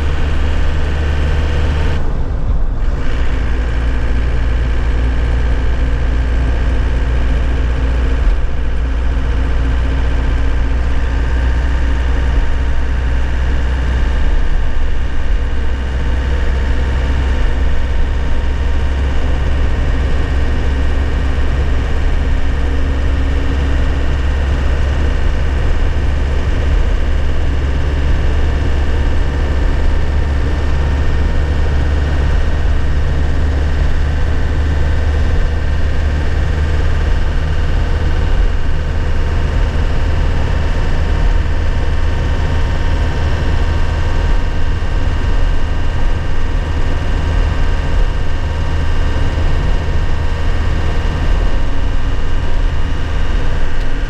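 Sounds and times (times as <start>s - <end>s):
truck engine rumble from inside cab: 0.0s - 54.0s.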